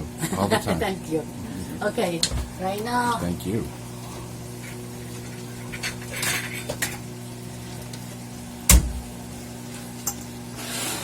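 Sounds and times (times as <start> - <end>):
steady low hum: 0.0 - 10.2
loud knock: 8.7 - 9.1.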